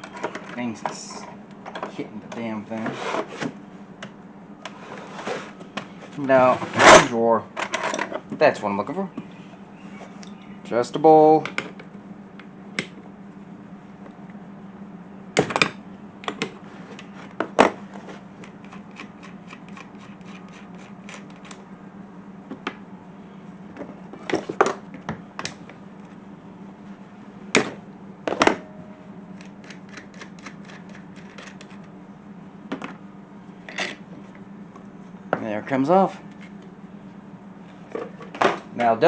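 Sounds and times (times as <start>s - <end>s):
steady low hum: 0.0s - 39.0s.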